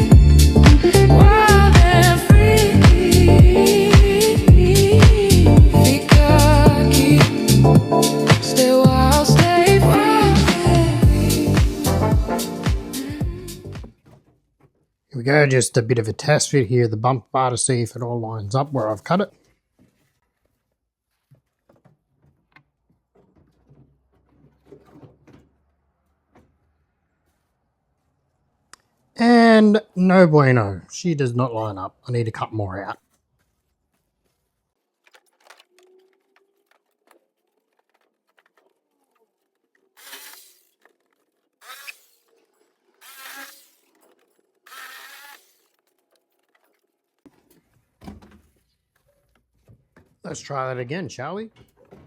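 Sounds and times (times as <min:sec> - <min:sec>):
power tool cutting plastic: 0:39.8 - 0:46.0.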